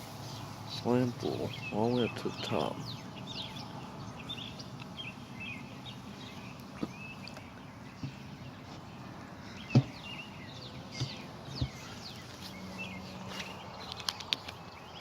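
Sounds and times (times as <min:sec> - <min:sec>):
honey bees humming: 0:00.0 - 0:14.9
small birds chirping: 0:00.0 - 0:15.0
sharp knocks: 0:09.7 - 0:10.0.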